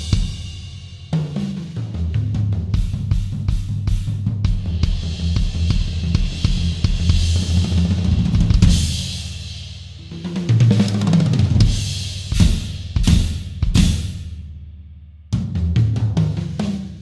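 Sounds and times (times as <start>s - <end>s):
drum kit playing: 0.0s - 14.6s
heavy accented drum hits: 11.4s - 14.4s.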